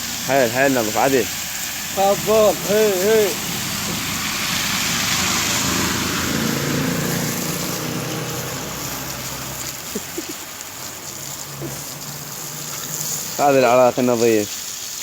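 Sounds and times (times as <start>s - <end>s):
vehicle engine idling: 0.0s - 14.4s
running water on a street: 0.0s - 15.0s.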